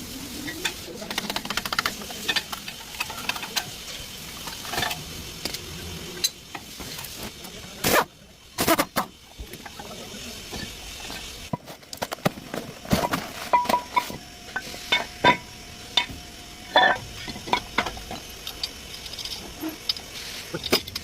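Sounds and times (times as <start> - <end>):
metal tools clinking: 13.0 - 14.2, 16.7 - 21.0.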